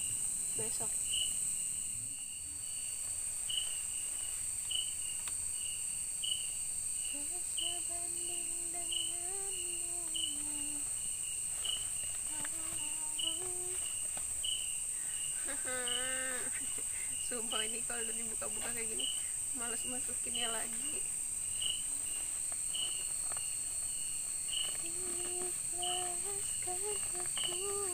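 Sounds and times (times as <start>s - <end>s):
insect chirp: 0.0s - 27.9s
insect chorus buzzing: 0.0s - 27.9s
person humming softly: 7.1s - 14.2s, 14.9s - 21.1s, 24.6s - 27.9s.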